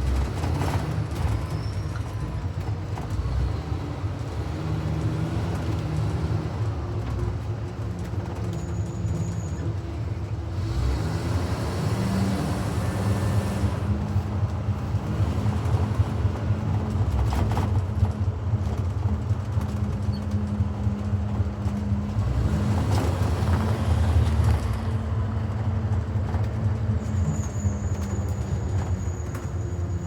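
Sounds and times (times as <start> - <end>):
bus engine drone: 0.0 - 30.0
road noise: 0.0 - 30.0.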